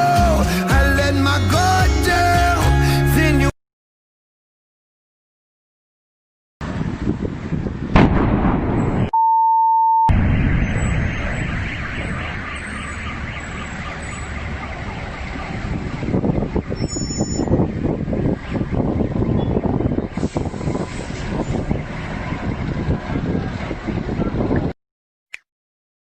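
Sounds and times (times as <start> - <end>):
explosion blast: 7.9 - 9.1, 10.1 - 12.7
pure steady beep: 9.1 - 11.2.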